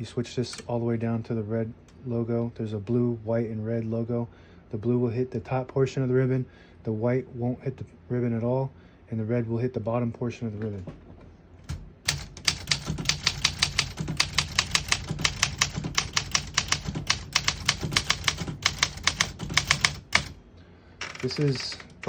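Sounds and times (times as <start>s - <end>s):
typewriter key strikes: 11.7s - 20.4s.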